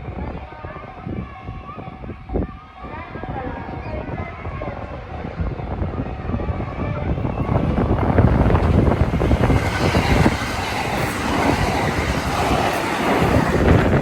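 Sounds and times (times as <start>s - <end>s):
train wheels clacking over rail joints: 7.1s - 14.0s.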